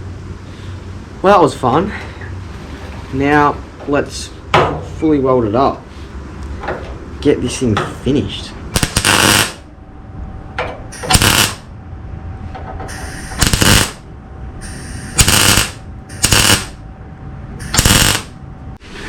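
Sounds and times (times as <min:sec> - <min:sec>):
low hum: 0:08.4 - 0:19.0
electric welder bursts: 0:08.7 - 0:09.7, 0:10.9 - 0:11.7, 0:12.9 - 0:14.0, 0:14.6 - 0:16.8, 0:17.6 - 0:18.4.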